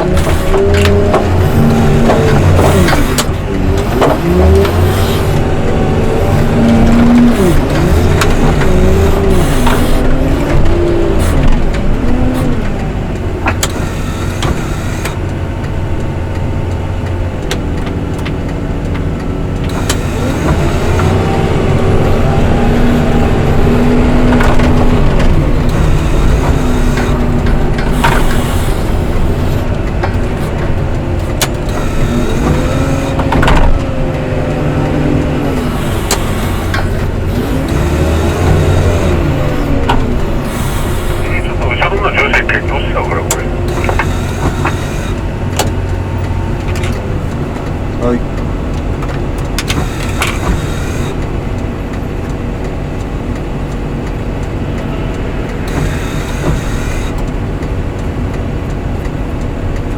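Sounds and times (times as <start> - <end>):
diesel engine revving: 0.0 - 59.9.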